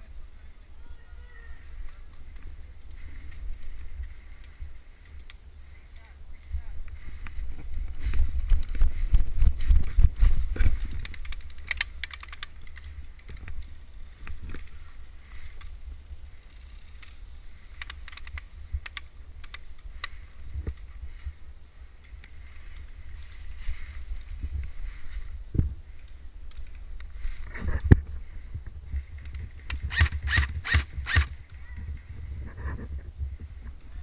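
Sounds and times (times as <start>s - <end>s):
wind rumble on microphone: 0.0s - 34.0s
microphone handling noise: 6.7s - 11.7s, 27.0s - 34.0s
rapid bursts of sharp clicks: 17.0s - 20.2s, 29.2s - 31.4s.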